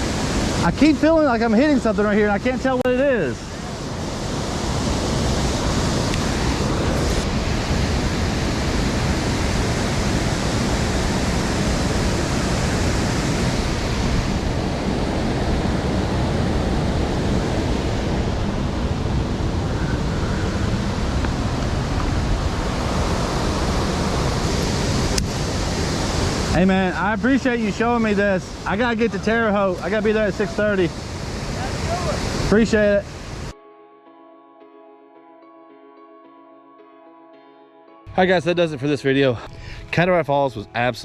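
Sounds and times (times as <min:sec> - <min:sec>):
waterfall roaring: 0:00.0 - 0:33.5
wind buffeting microphone: 0:03.5 - 0:33.5.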